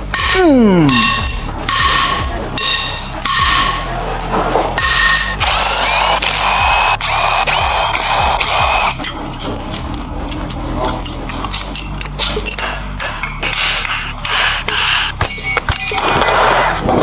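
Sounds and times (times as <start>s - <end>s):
metallic clicks and ticks: 4.8s - 16.3s
power tool whine: 5.4s - 9.0s.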